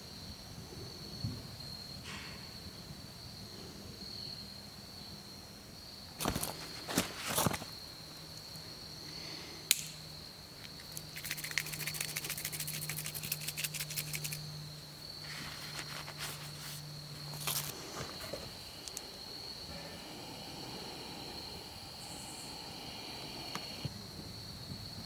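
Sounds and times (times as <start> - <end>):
crickets trilling: 0.0 - 25.0
sharp click: 9.7 - 10.0
low steady hum: 10.8 - 23.9
crackling clicks: 23.4 - 23.9.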